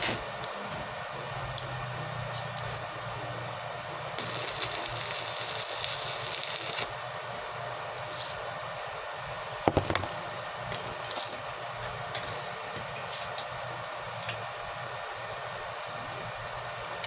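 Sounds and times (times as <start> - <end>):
welding hiss with low hum: 0.0 - 9.5.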